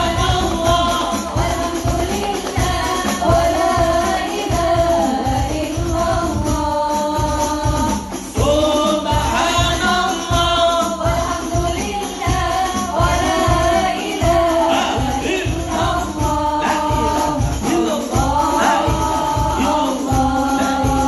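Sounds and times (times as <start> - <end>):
jingling percussion: 0.0 - 21.0
lead voice singing: 0.0 - 21.0
steady drum beat: 0.0 - 21.0
women's backing vocals: 0.0 - 21.0.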